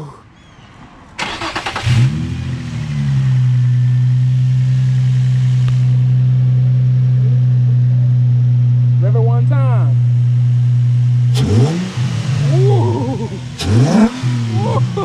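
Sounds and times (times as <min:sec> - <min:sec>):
car engine revving and idling: 0:01.1 - 0:15.0
car engine starter cranking: 0:01.2 - 0:02.4.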